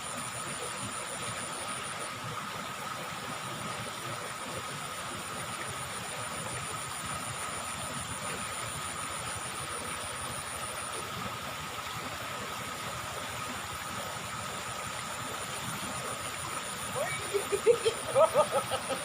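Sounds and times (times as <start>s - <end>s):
river water running: 0.0s - 19.0s
high-pitched insect drone: 13.2s - 19.0s.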